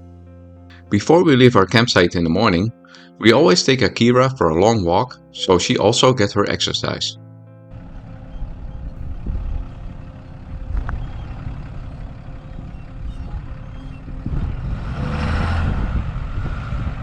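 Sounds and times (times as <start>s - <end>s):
truck engine rumble: 7.7s - 17.0s
tyre and wind noise: 7.8s - 17.0s.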